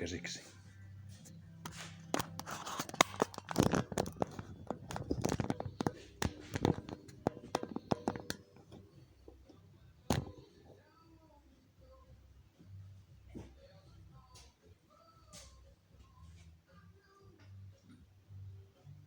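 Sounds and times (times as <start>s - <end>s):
tools clicking and scraping: 1.6s - 10.4s.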